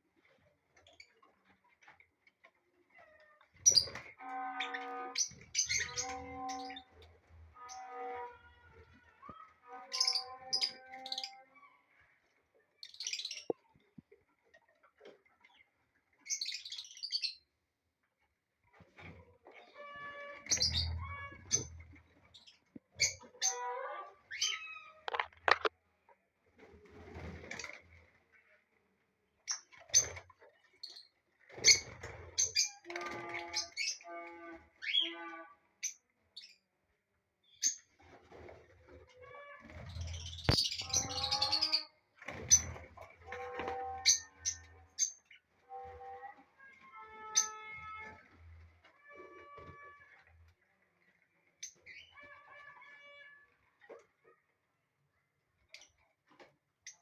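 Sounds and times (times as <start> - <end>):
lovebirds chirping shrilly: 40.2 - 41.9.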